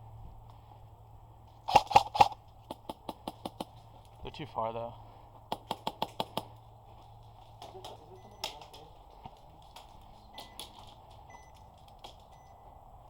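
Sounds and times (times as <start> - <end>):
airsoft gun shots: 1.7 - 3.7
faint high beep: 8.1 - 8.6, 10.3 - 10.7, 11.3 - 11.6, 12.3 - 12.6.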